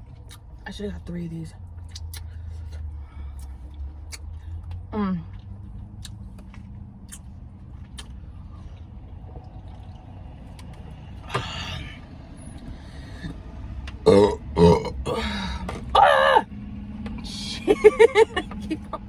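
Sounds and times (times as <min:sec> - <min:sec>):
low steady hum: 0:00.0 - 0:19.0
woman burping: 0:14.1 - 0:16.4.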